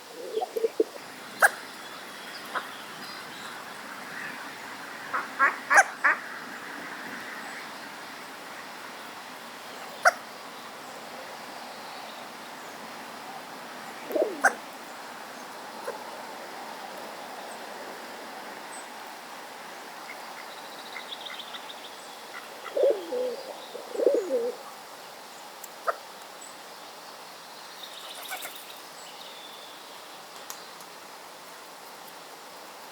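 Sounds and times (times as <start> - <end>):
soft low wavering bird calls: 0.0 - 3.7, 13.9 - 14.8, 22.3 - 24.8.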